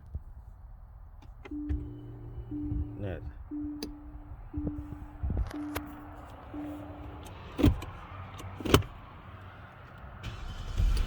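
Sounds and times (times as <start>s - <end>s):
car engine starting: 1.2s - 9.2s, 9.9s - 11.0s
dashboard chime beeps: 1.5s - 7.2s.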